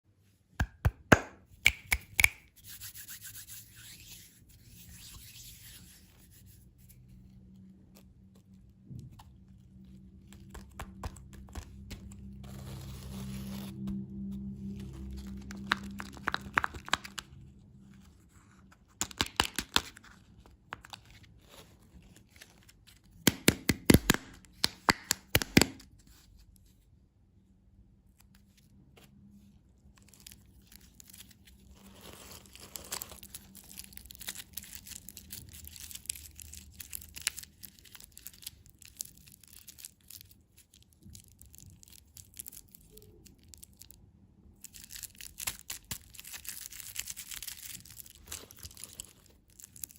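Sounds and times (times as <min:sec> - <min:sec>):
plastic wrappers crinkling: 0:13.7 - 0:17.5, 0:30.0 - 0:44.0, 0:44.6 - 0:49.9.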